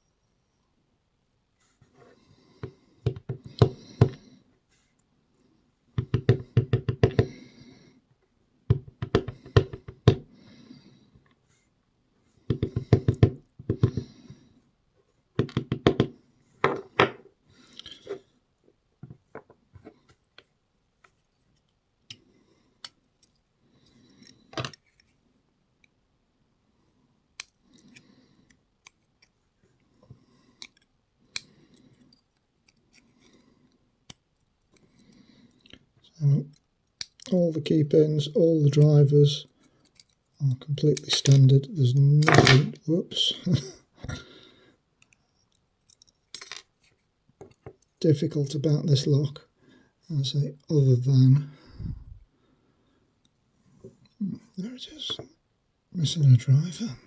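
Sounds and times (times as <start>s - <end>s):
metallic clicks of padlock parts: 27.4s - 29.4s, 30.6s - 33.4s, 36.5s - 37.3s, 39.8s - 40.3s, 45.0s - 46.7s.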